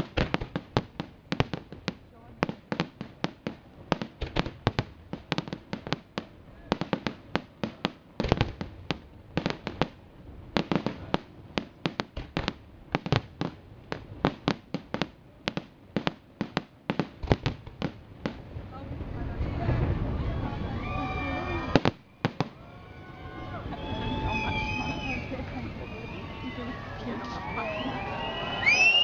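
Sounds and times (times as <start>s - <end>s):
fireworks bursting and crackling: 0.0s - 29.0s.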